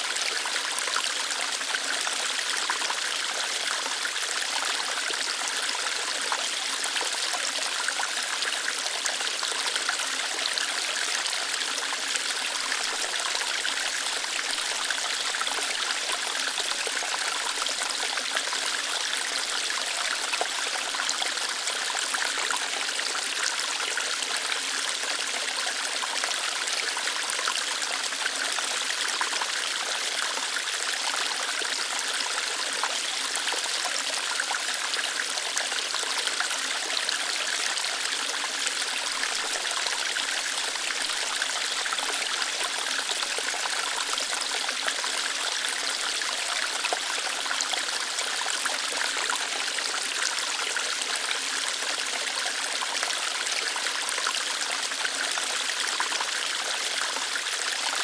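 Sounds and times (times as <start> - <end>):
small waterfall splashing over rocks: 0.0 - 58.0.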